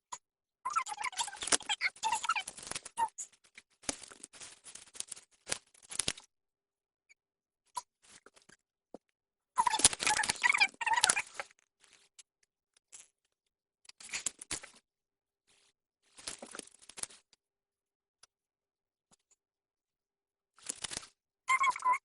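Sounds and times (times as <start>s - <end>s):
small objects rustling and clattering: 1.0s - 6.3s, 9.6s - 14.8s, 15.5s - 17.4s, 20.6s - 21.9s.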